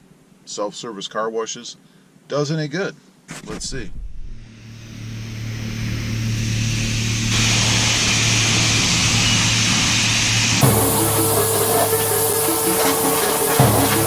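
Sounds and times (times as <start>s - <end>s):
pump motor hum: 4.6s - 14.0s
high-pressure spray hissing: 5.2s - 14.0s.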